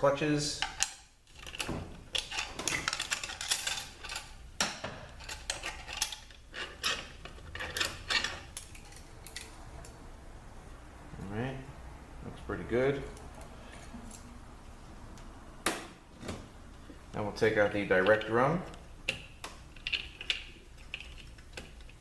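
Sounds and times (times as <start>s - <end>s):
metal clutch plates clinking: 5.1s - 9.6s.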